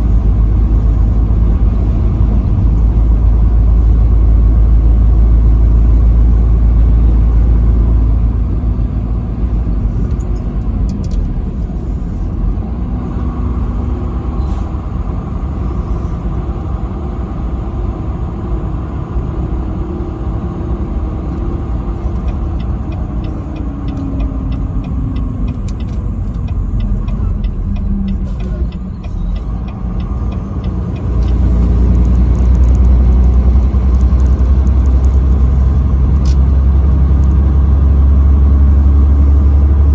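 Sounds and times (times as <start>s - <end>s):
vehicle engine and road rumble: 0.0s - 39.9s
quick light ticks: 22.0s - 36.5s.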